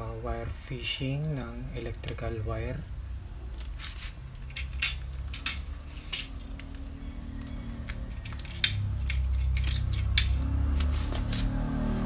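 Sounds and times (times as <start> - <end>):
wire and metal tools clicking: 3.6 - 11.6.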